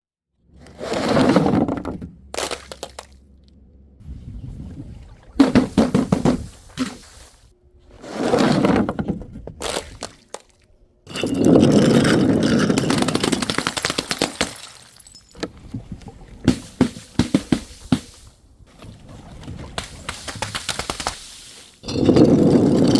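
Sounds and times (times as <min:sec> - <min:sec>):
smashing and crunching: 0:11.2 - 0:15.4.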